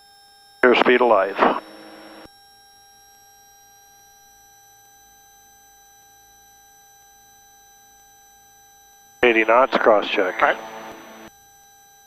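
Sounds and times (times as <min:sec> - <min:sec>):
intercom electrical whine: 0:00.6 - 0:02.6, 0:06.0 - 0:11.3.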